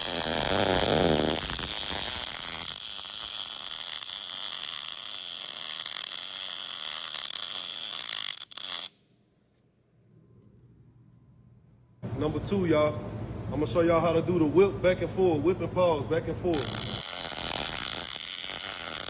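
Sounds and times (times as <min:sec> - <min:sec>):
welding arc crackling: 0:00.0 - 0:09.0, 0:16.5 - 0:19.0.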